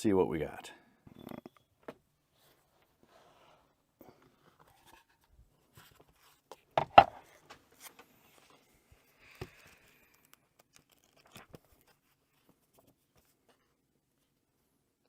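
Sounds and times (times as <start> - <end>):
paper rustling: 4.4 - 13.8.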